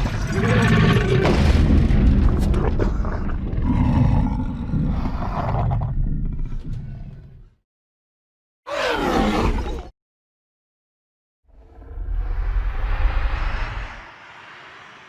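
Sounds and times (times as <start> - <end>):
deep dinosaur roar: 2.3 - 7.5.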